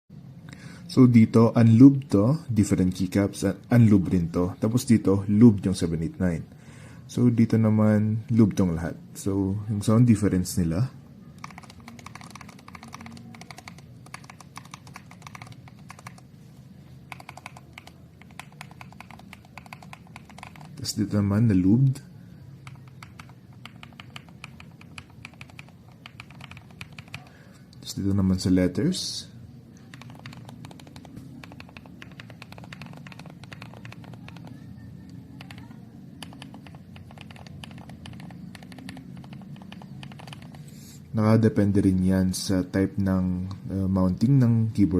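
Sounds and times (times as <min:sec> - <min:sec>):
mechanical keyboard key clacks: 0:11.4 - 0:16.2, 0:17.1 - 0:20.8, 0:22.6 - 0:27.3, 0:29.9 - 0:34.6, 0:35.3 - 0:40.6.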